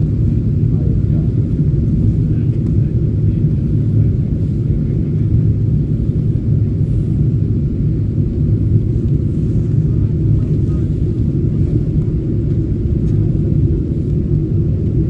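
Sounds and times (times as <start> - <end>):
airliner cabin rumble: 0.0 - 15.0.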